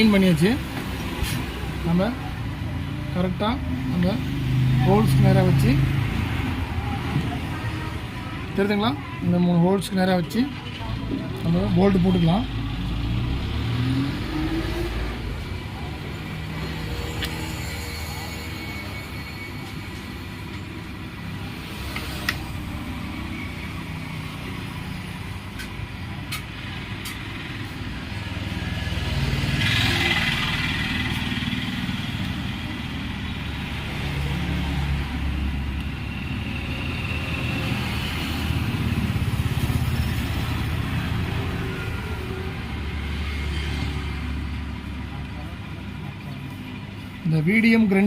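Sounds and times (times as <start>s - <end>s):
vehicle engines rumbling: 0.0s - 48.0s
vehicles passing: 0.0s - 48.0s.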